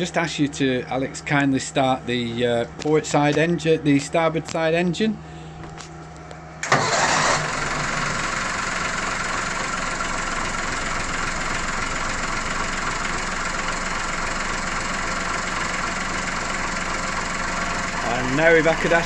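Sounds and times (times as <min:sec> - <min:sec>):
boat engine starting and idling: 0:06.6 - 0:19.0.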